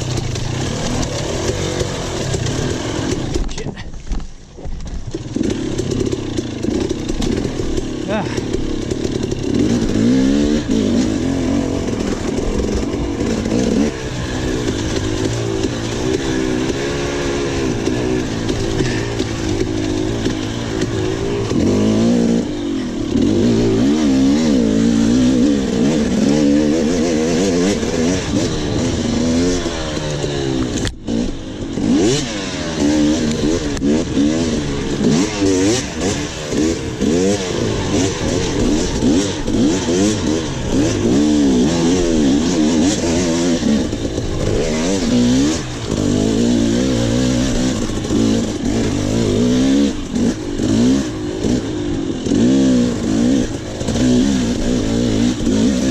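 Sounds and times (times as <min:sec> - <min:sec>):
dirt bike engine revving: 0:00.0 - 0:03.8, 0:05.0 - 0:55.9.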